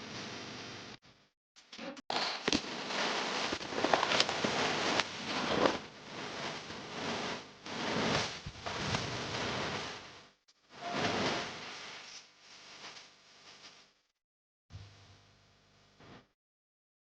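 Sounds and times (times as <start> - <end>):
footsteps on stones and snow: 2.5 - 5.8.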